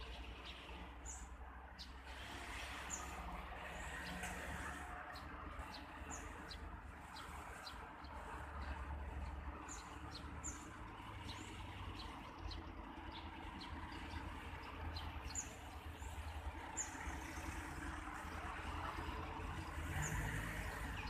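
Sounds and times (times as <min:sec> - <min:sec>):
birds chirping: 0:08.6 - 0:17.2.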